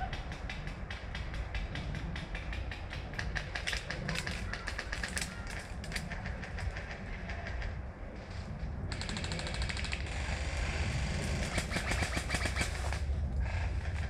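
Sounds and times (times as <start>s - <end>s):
low rumble: 3.1s - 14.0s.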